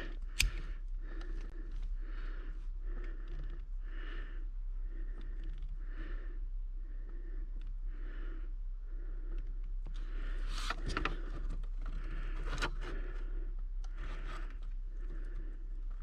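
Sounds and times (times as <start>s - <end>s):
lighter and connector clicks: 0.3s - 0.7s.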